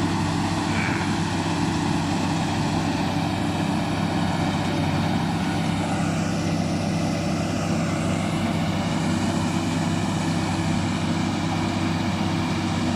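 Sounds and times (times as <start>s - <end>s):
bulldozer diesel engine running: 0.0s - 12.9s.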